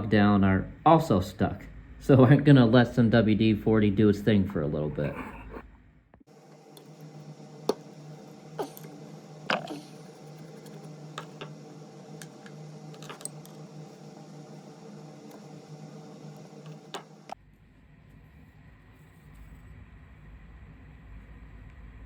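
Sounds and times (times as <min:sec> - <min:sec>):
steady low hum: 0:00.0 - 0:17.4
metal parts clicking on workbench: 0:06.7 - 0:17.4.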